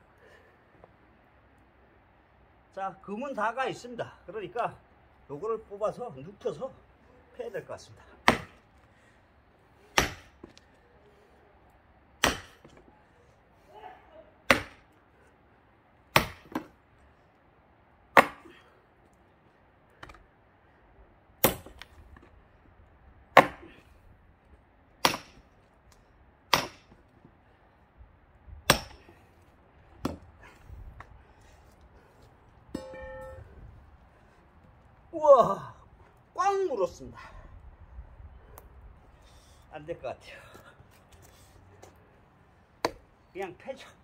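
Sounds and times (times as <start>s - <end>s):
axe blows splitting a log: 9.9s - 10.4s, 12.2s - 12.7s, 16.2s - 16.7s, 18.2s - 18.5s, 23.4s - 23.7s, 26.5s - 26.9s.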